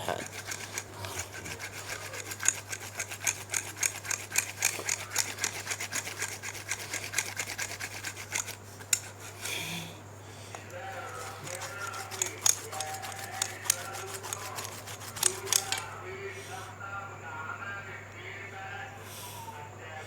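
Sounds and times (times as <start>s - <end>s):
hand tool scraping plastic: 0.0s - 9.7s, 10.9s - 15.9s.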